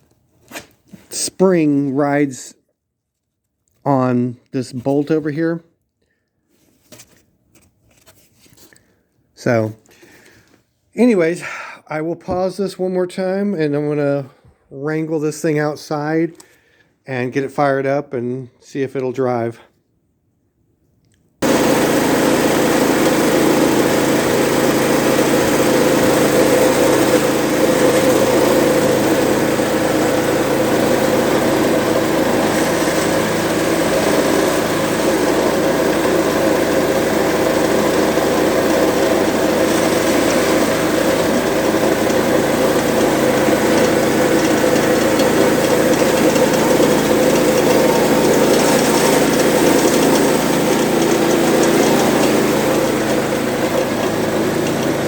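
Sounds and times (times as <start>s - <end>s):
snowblower engine running: 21.4s - 55.0s.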